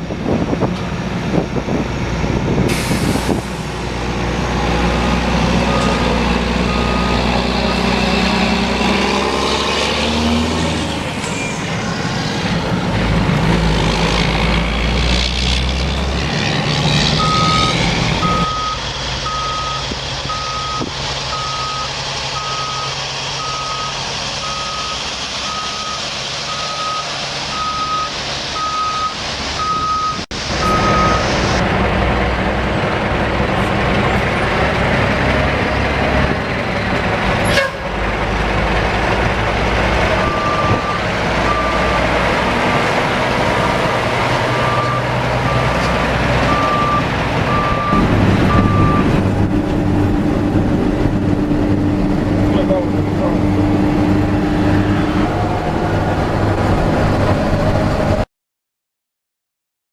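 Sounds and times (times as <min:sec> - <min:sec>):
diesel engine running: 0:00.0 - 0:58.2
backup alarm beeping: 0:17.2 - 0:31.6.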